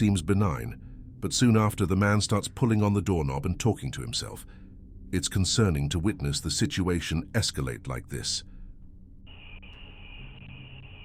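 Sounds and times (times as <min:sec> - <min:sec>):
faint low hum: 0:00.0 - 0:11.0
crickets chirring: 0:09.3 - 0:11.0.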